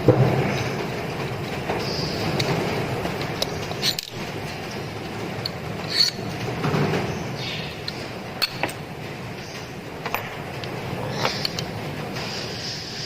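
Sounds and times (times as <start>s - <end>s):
steady background hiss: 0.0s - 13.0s
metallic clicks of tools and parts: 3.3s - 4.2s, 5.4s - 6.4s, 7.8s - 8.8s.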